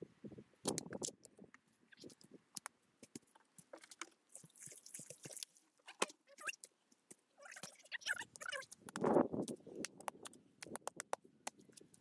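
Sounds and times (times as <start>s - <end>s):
wet mud slapping: 7.5s - 12.0s.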